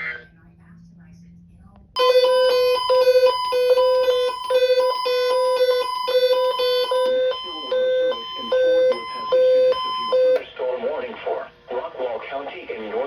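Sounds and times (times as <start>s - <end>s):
electronic alarm beeping: 2.0s - 10.4s.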